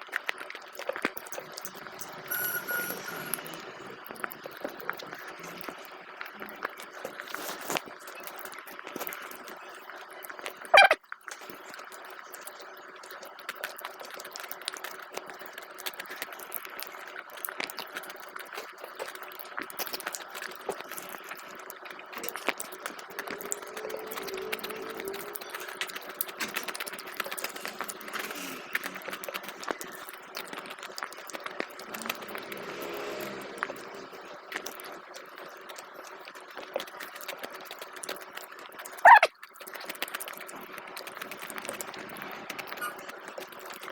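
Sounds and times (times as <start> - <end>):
faint steady hum: 0.0 - 11.0
chewing and mouth sounds: 0.0 - 43.9.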